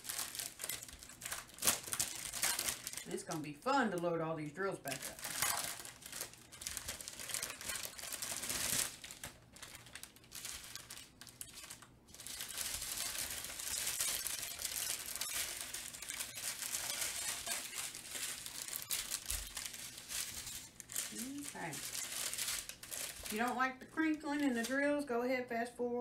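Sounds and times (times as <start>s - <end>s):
tiny beads shifting in bags: 0.0s - 3.3s, 4.9s - 23.7s
plastic bags crinkling: 0.0s - 24.9s.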